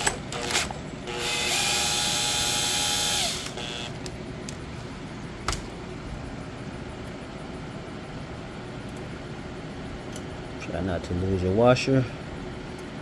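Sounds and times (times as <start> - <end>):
power drill whining: 0.0 - 4.0.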